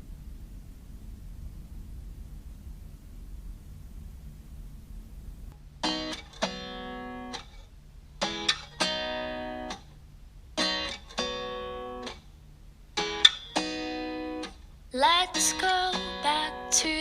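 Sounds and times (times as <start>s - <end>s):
acoustic guitar strumming: 5.8s - 7.6s, 8.2s - 9.9s, 10.6s - 12.3s, 13.0s - 17.0s.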